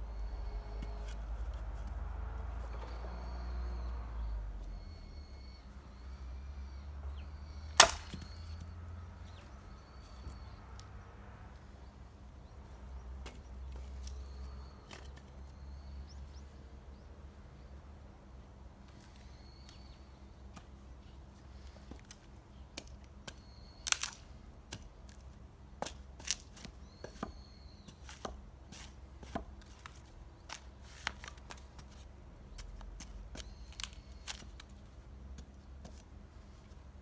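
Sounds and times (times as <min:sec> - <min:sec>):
axe splitting firewood: 0:07.7 - 0:08.6, 0:23.8 - 0:24.8.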